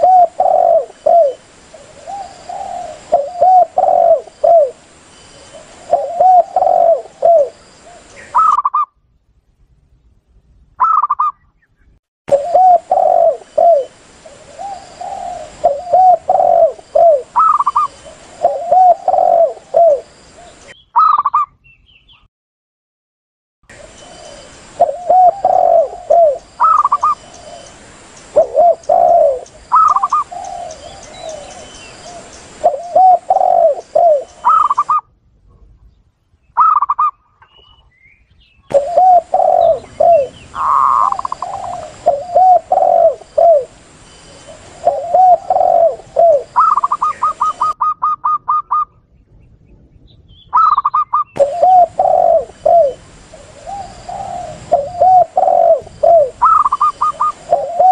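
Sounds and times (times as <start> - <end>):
doves cooing: 0.0 - 4.8, 5.4 - 8.8, 12.3 - 21.4, 23.7 - 35.0, 38.7 - 48.9, 50.6 - 57.9.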